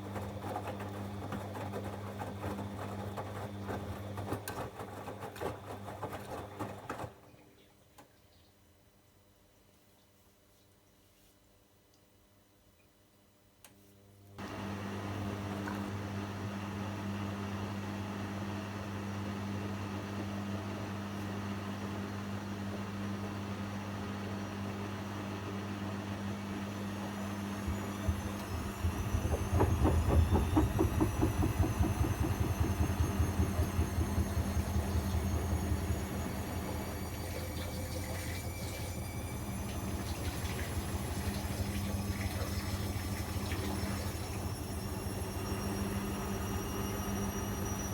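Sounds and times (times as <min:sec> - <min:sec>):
washing machine low hum: 0:00.0 - 0:07.6, 0:14.4 - 0:47.9
motor whine rising: 0:26.2 - 0:47.9
drum thumping rhythmically: 0:27.7 - 0:33.8.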